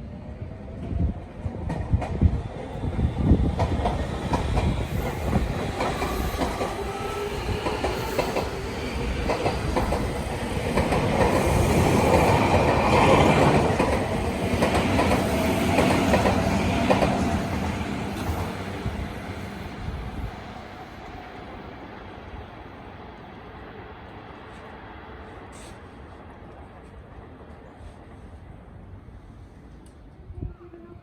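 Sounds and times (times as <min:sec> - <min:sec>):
train running noise: 0:00.7 - 0:30.8
train wheels clicking over rail joints: 0:03.5 - 0:18.8.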